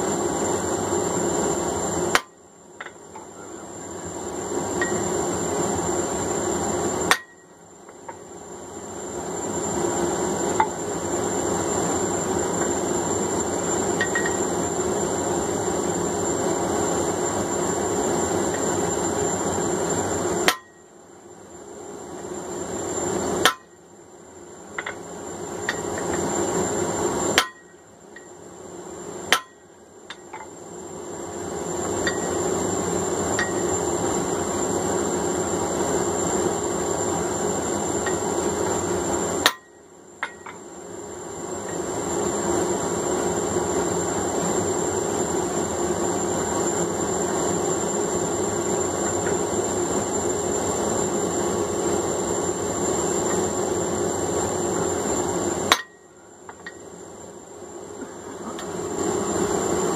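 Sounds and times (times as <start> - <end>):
hammer striking steel on anvil: 2.1 - 3.0, 7.1 - 7.5, 20.4 - 20.8, 23.4 - 23.8, 27.4 - 27.8, 29.3 - 30.4, 39.4 - 40.6, 55.7 - 56.0.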